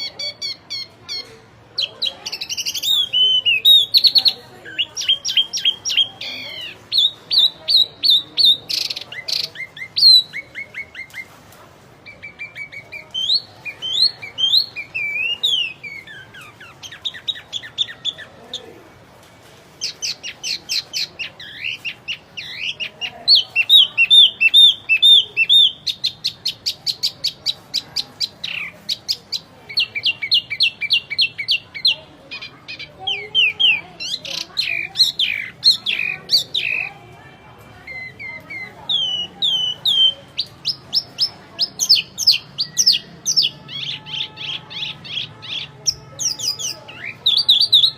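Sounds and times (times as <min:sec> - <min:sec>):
songbird singing: 0:00.0 - 0:18.8, 0:19.8 - 0:47.9.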